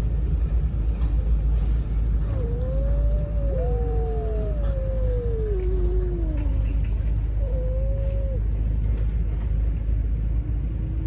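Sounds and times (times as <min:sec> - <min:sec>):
steady low rumble: 0:00.0 - 0:11.0
cats yowling: 0:02.2 - 0:08.7.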